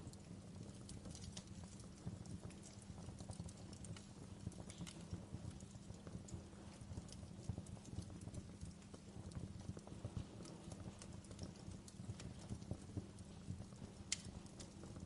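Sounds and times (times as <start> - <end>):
low rumble of burning: 0.0 - 15.0
wood fire crackling and popping: 0.0 - 15.0.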